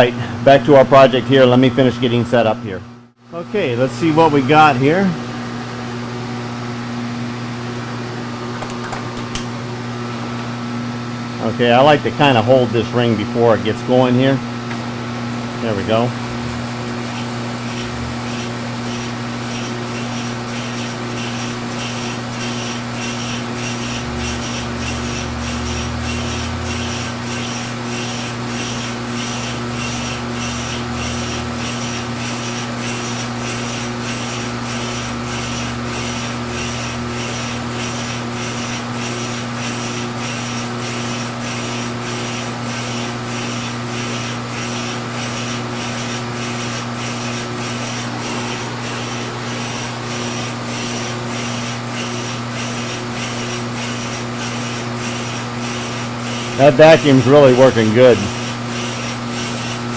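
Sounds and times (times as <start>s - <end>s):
machine drive hum: 0.0s - 59.9s
shop vacuum running: 0.0s - 59.9s
tool bit rasping on tube: 48.8s - 59.8s.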